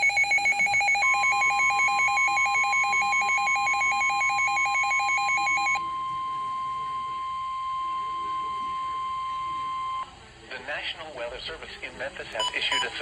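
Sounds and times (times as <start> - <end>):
steady alarm tone: 0.0 - 10.1.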